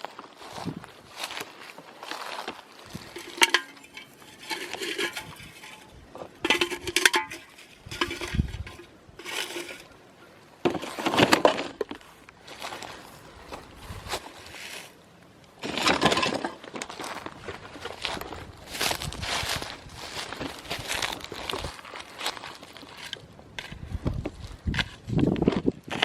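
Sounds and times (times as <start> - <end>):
cans and bottles clinking: 3.0 - 9.9.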